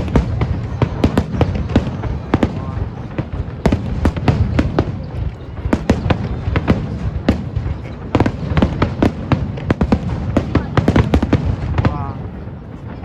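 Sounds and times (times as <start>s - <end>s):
fireworks bangs: 0.0s - 13.0s.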